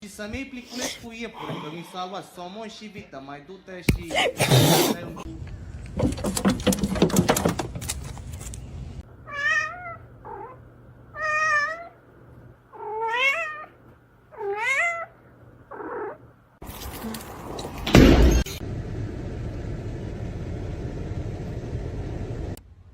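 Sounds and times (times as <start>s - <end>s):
pet meowing: 9.3s - 10.6s, 11.2s - 12.0s, 12.8s - 16.2s.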